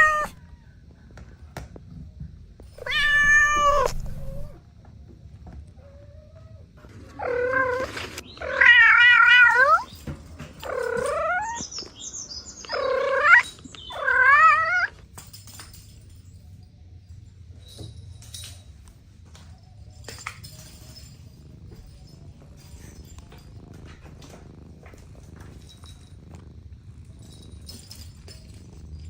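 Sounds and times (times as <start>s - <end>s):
cat meowing: 0.0s - 0.4s, 2.8s - 4.6s, 7.2s - 9.9s, 10.6s - 11.6s, 12.7s - 14.9s
faint rustling: 2.7s - 4.6s.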